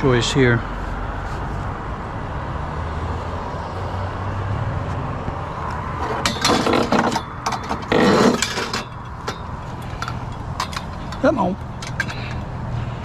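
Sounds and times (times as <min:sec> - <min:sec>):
scrap metal clanking: 0:06.0 - 0:12.5
vehicle engine idling: 0:08.6 - 0:13.0.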